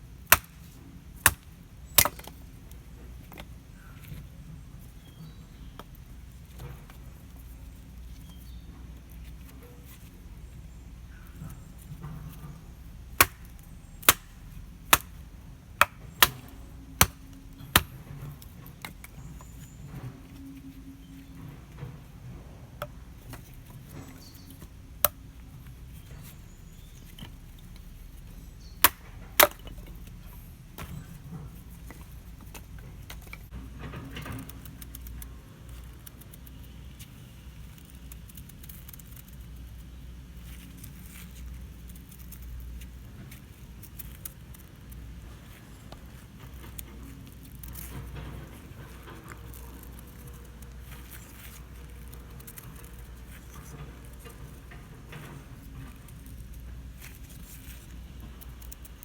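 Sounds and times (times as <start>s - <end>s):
sharp crack: 0.2s - 2.4s, 13.1s - 15.2s, 15.8s - 18.0s
handling clicks and knocks: 11.2s - 39.6s, 40.5s - 59.0s.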